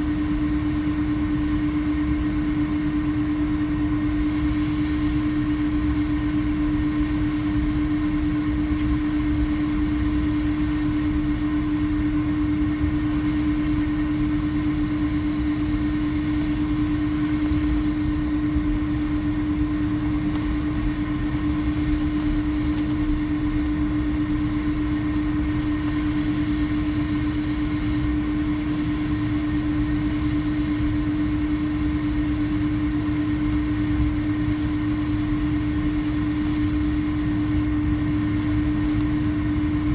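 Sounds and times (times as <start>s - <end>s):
jet engines running: 0.0s - 39.9s.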